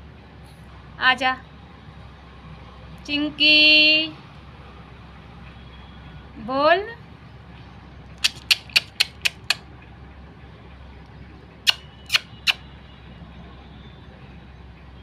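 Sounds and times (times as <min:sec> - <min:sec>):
bird squawking: 0:08.2 - 0:09.6, 0:11.7 - 0:12.6.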